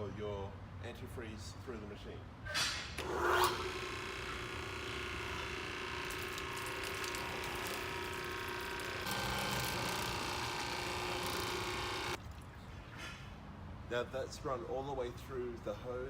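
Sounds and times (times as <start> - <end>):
pressure washer running: 3.0 - 12.2.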